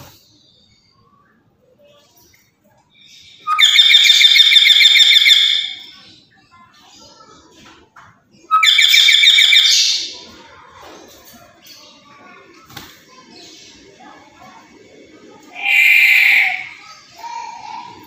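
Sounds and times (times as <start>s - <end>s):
parrot harsh calls: 15.5s - 18.0s.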